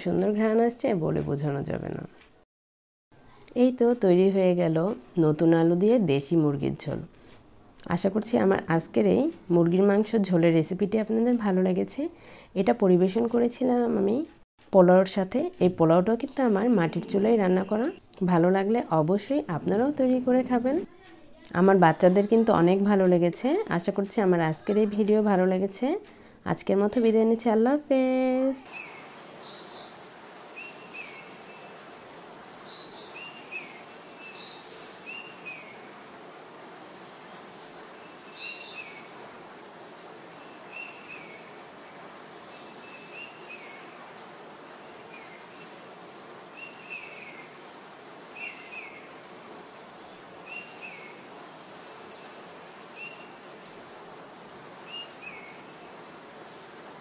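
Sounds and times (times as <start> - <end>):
steady background hiss: 14.8 - 57.0
birds chirping: 28.6 - 57.0.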